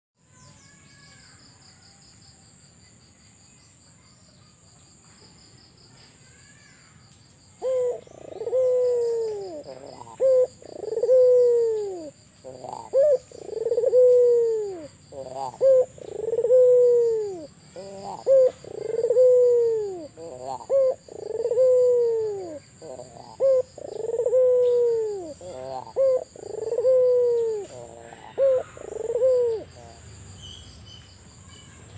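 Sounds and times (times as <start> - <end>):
dove cooing: 7.6 - 30.0.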